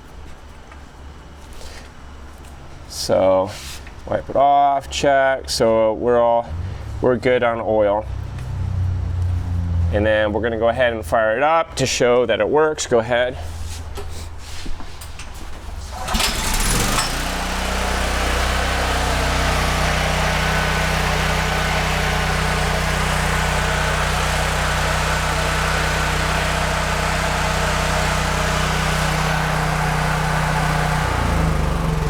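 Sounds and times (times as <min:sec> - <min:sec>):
generator engine starting and running: 0:06.4 - 0:32.0.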